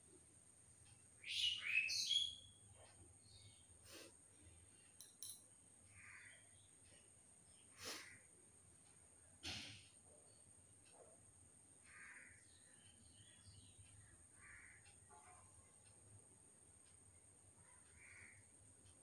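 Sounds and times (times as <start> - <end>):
wild birds chirping: 1.2 - 5.0, 5.7 - 8.4, 11.6 - 15.9, 17.1 - 18.6.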